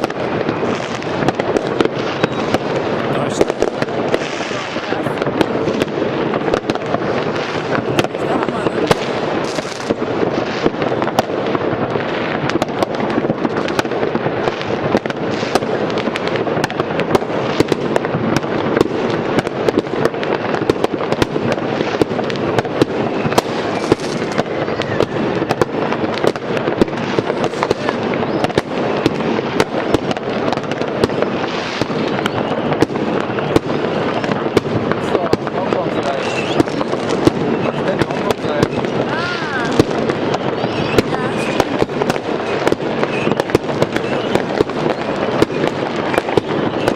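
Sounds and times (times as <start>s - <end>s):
distant fireworks crackle and rumble: 0.0s - 46.9s.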